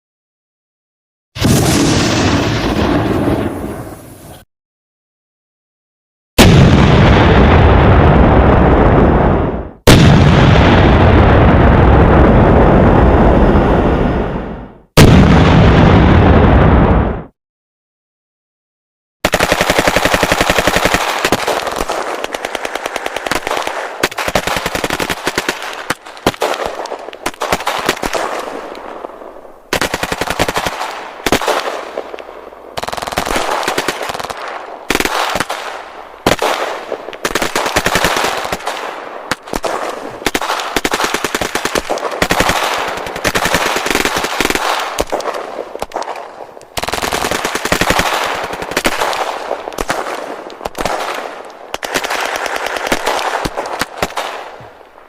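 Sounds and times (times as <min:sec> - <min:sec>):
automatic gunfire: 0:19.2 - 0:28.6, 0:29.7 - 0:32.1, 0:32.8 - 0:54.6.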